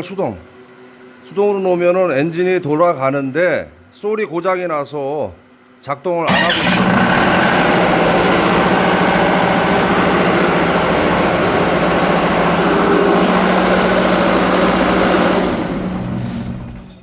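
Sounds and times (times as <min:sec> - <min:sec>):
pump engine running: 0:06.3 - 0:17.0.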